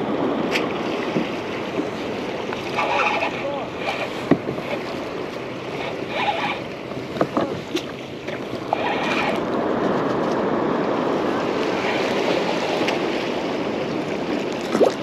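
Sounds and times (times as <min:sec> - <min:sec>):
water sloshing against kayak hull: 0:00.0 - 0:15.0
wind on microphone: 0:00.0 - 0:15.0
sharp knocks on boat: 0:00.5 - 0:02.0, 0:04.0 - 0:05.4, 0:06.9 - 0:08.8.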